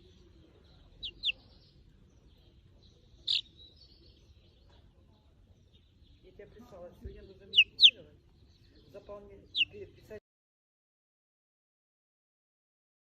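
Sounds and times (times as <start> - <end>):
cockatiel chirping: 0.9 - 1.6, 3.2 - 3.6, 7.4 - 8.0.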